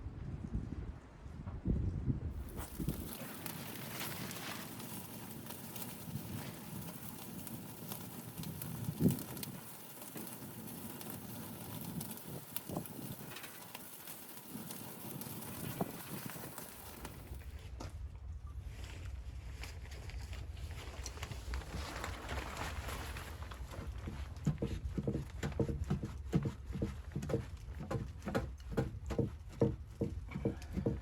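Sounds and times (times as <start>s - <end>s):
wood fire crackling: 2.4s - 17.6s.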